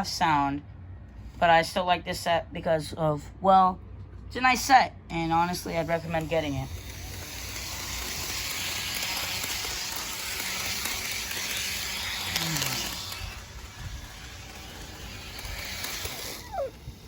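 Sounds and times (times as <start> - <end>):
model train whirring on track: 5.2 - 17.0.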